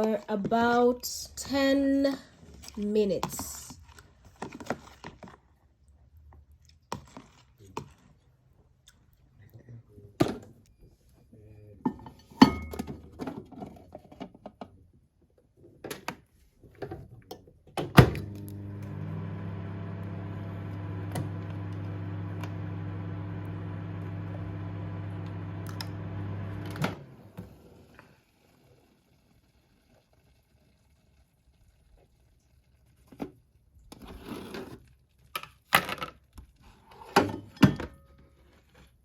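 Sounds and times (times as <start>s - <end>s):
microwave click: 18.0s - 27.1s
microwave humming with fan: 18.0s - 27.6s.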